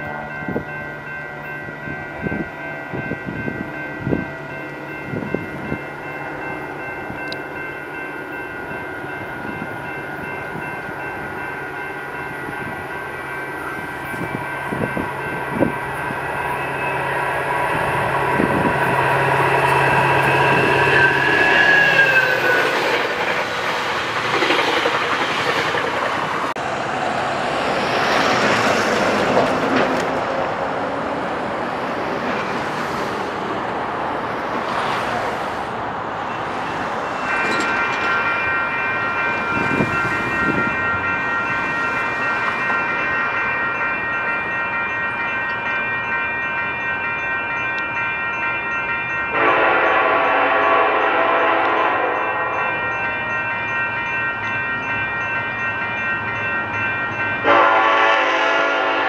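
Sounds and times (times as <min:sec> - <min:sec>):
train wheels rolling on track: 0:00.0 - 0:59.0
train horn chord: 0:49.3 - 0:52.6, 0:57.4 - 0:59.0.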